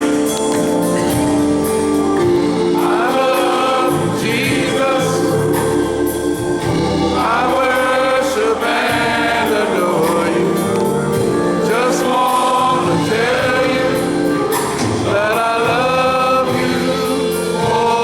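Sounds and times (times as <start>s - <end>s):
choir singing gospel music: 0.0s - 18.0s.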